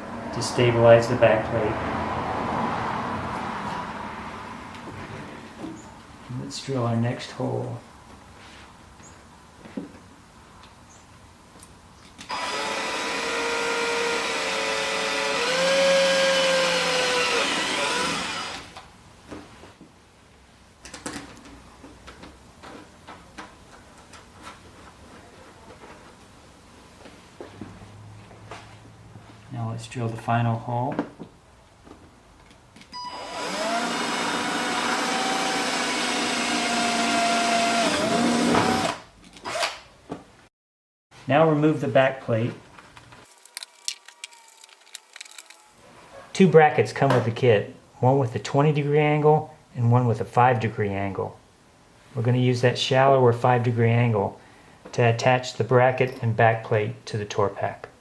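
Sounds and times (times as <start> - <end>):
electric drill whining: 12.3 - 18.8, 33.0 - 39.8.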